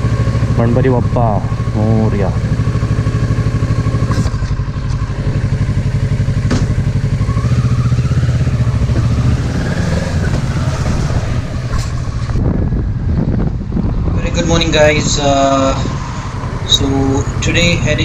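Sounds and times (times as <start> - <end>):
motorcycle engine running: 0.0 - 18.0.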